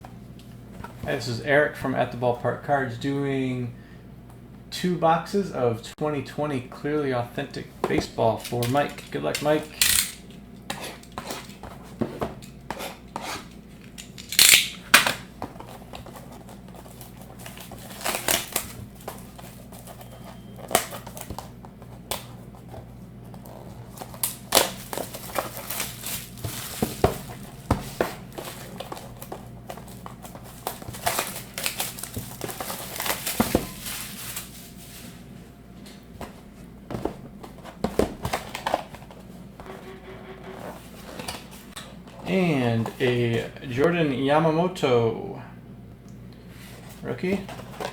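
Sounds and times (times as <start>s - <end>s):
plastic wrapping crinkling: 15.6s - 21.6s, 23.4s - 35.4s.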